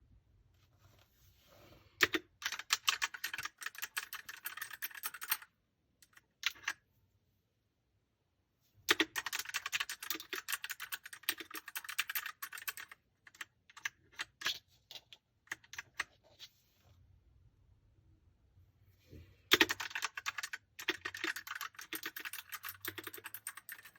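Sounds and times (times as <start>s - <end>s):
mechanical keyboard typing: 2.0s - 6.8s, 8.9s - 14.6s, 15.5s - 16.2s, 19.5s - 23.9s.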